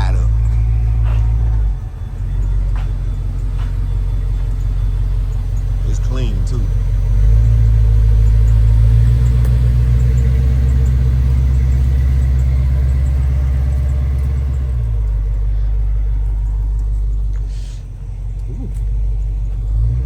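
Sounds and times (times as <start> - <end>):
car engine rumbling: 0.0 - 20.0.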